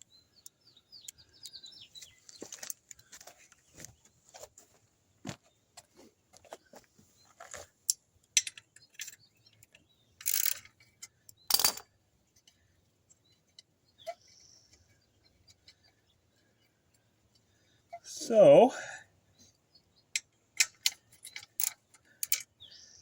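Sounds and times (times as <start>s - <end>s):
wrench and bolts clinking: 8.3s - 11.9s, 20.2s - 22.5s.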